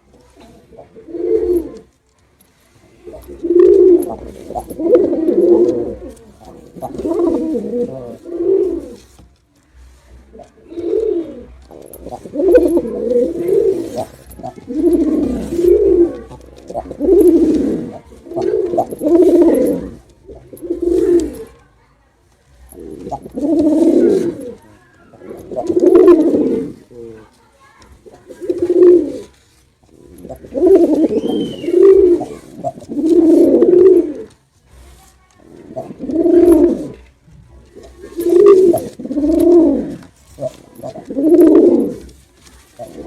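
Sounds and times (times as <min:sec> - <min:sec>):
pigeon cooing: 0:00.0 - 0:01.9, 0:03.0 - 0:09.1, 0:10.3 - 0:21.7, 0:22.7 - 0:27.3, 0:28.0 - 0:34.4, 0:35.6 - 0:42.2, 0:42.8 - 0:43.0.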